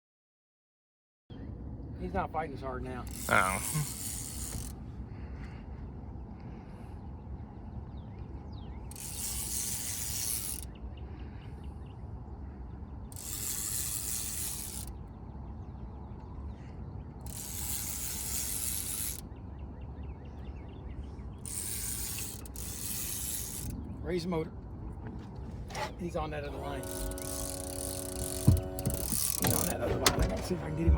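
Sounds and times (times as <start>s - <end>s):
fishing reel buzzing: 3.0s - 4.8s, 8.9s - 10.7s, 13.1s - 15.0s, 17.2s - 19.2s, 21.4s - 23.8s, 26.5s - 29.8s.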